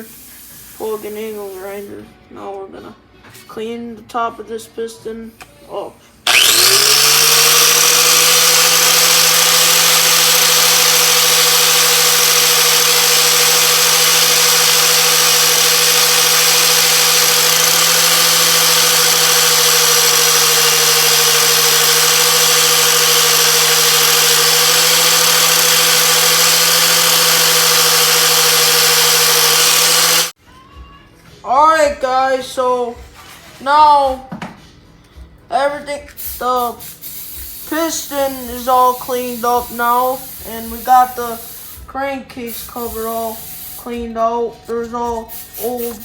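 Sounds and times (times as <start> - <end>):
angle grinder wire-brushing metal: 6.3 - 30.4, 37.7 - 41.4.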